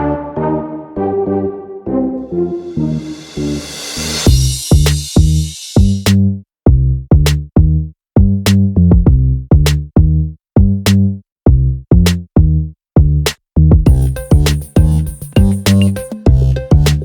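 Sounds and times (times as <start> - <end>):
bass line: 0.0 - 17.0
electronic drum beat: 3.0 - 6.1, 13.7 - 17.0.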